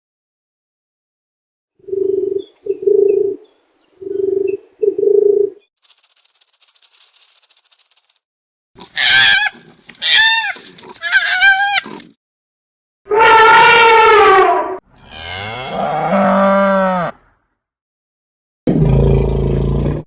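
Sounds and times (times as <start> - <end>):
high wavering animal calls: 9.0 - 12.0.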